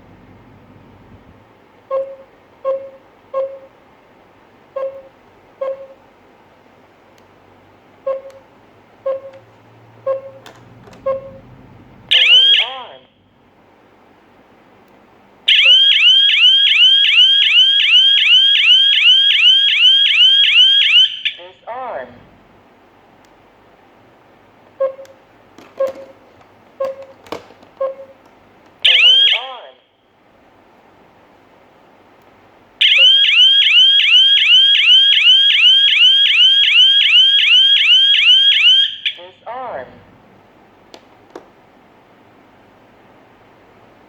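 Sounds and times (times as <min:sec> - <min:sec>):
electronic siren whooping: 0:12.1 - 0:12.7, 0:32.8 - 0:39.2
loud yelping alarm siren: 0:12.1 - 0:12.9, 0:15.5 - 0:21.4, 0:28.8 - 0:29.6, 0:32.8 - 0:39.3.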